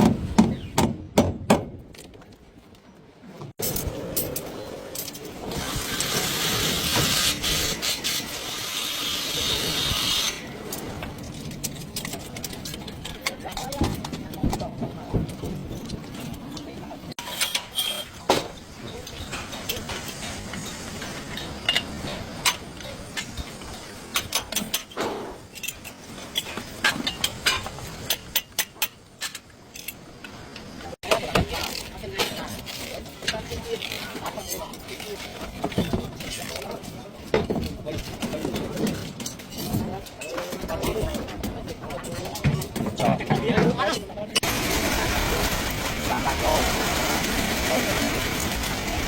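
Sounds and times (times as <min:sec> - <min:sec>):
tool hissing and grating: 0:05.4 - 0:10.7.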